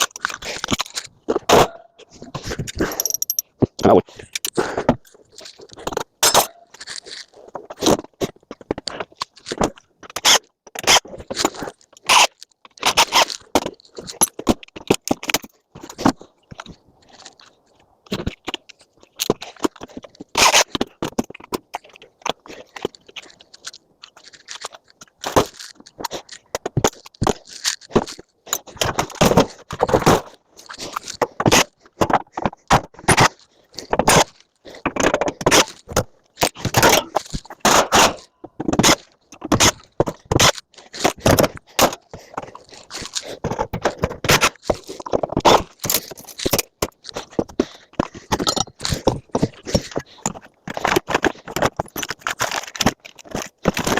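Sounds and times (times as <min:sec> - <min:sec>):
hand tools on scrap metal: 0:02.6 - 0:04.6, 0:33.9 - 0:53.9.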